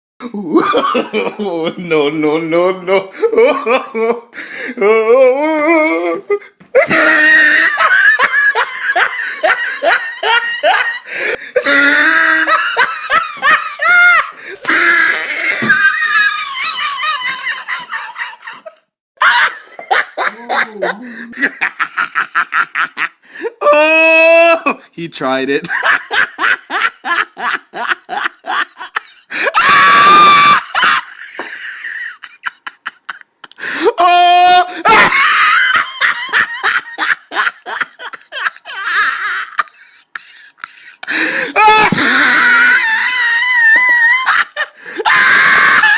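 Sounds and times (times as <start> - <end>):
person laughing hard: 0.2 - 2.0, 2.9 - 24.8, 25.6 - 45.9
breathy sounds: 4.3 - 7.5, 11.0 - 12.4, 20.9 - 21.4, 33.5 - 34.0, 39.8 - 42.3
person screaming: 4.8 - 8.0, 11.6 - 12.8, 14.0 - 17.3, 23.6 - 24.8, 29.4 - 31.0, 33.7 - 36.1, 41.1 - 45.9.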